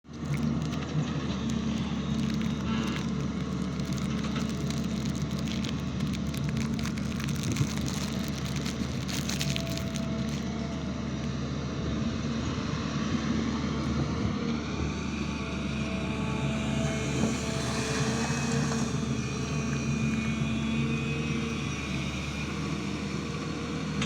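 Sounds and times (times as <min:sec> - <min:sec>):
rattling and crackling clatter: 0:00.0 - 0:10.9
excavator diesel engine: 0:00.0 - 0:24.0.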